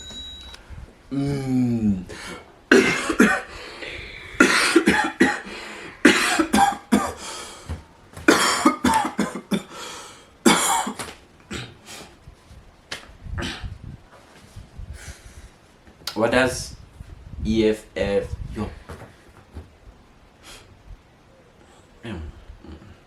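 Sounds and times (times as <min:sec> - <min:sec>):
short falling moan: 0:01.1 - 0:02.1
person coughing hard: 0:02.7 - 0:03.5, 0:04.4 - 0:07.3, 0:08.3 - 0:09.8, 0:10.4 - 0:11.8.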